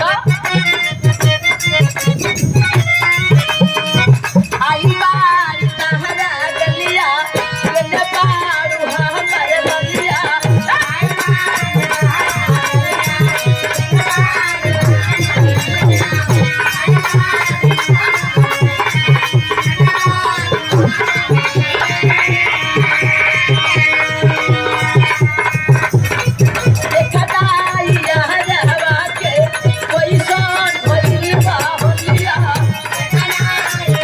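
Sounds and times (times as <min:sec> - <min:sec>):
hand drum beat: 0:09.0 - 0:34.0.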